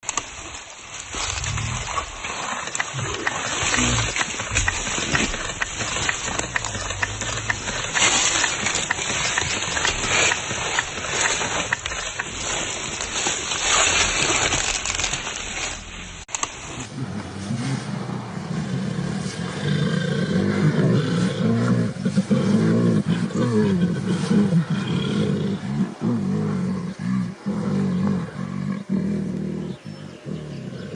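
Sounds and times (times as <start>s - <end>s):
sharp clicks: 2.6s - 12.4s.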